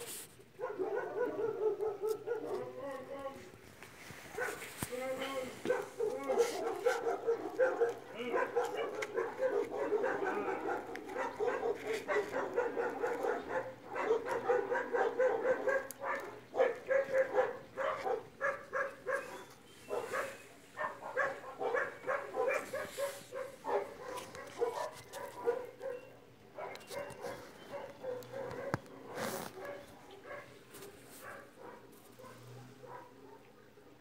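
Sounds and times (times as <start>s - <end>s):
dog barking and yipping: 0.5s - 3.0s, 4.3s - 30.5s, 31.2s - 33.6s.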